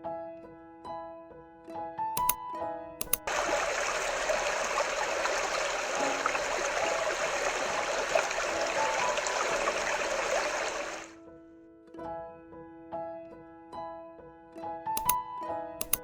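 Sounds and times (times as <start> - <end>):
recorded stream water rushing: 3.2 - 11.1.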